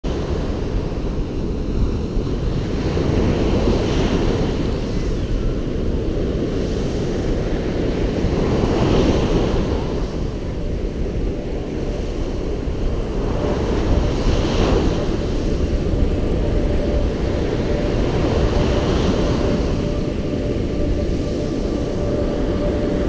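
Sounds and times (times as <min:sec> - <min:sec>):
wind rumbling on microphone: 0:00.0 - 0:23.0.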